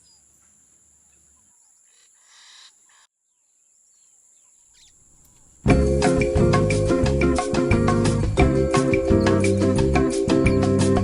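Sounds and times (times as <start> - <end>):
loud music: 5.7 - 11.0.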